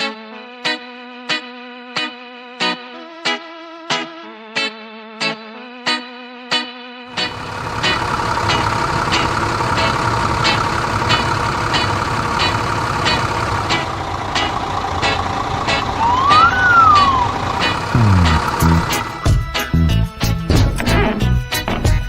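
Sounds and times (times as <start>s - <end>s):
cartoon engine sound effect: 15.9s - 19.2s
rising and falling whistle: 16.0s - 17.6s
falling tones: 16.0s - 19.2s.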